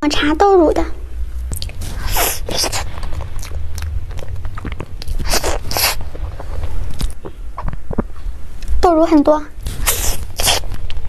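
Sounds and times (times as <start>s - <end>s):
person chewing with clicks: 1.5s - 8.7s.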